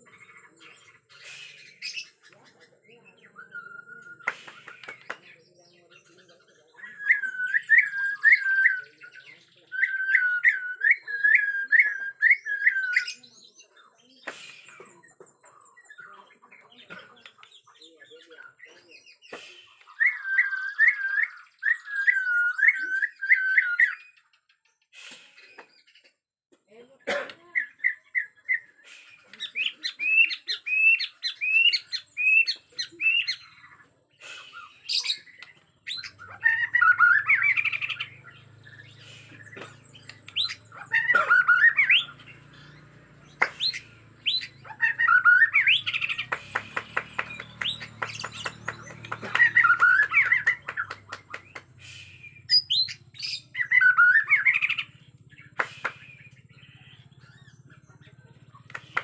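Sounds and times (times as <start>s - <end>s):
bird singing whistled phrases: 3.2s - 5.0s, 6.8s - 13.5s, 19.1s - 24.2s, 34.3s - 39.0s, 43.5s - 55.0s
rising bird chirps: 27.6s - 57.8s.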